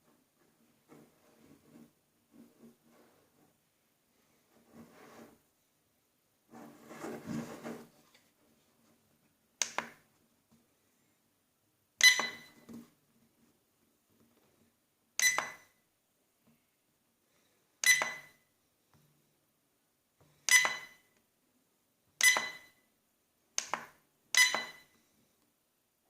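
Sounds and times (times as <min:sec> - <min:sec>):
sharp taps with ringing clink: 0:17.8 - 0:18.4, 0:20.5 - 0:21.0, 0:22.2 - 0:22.7.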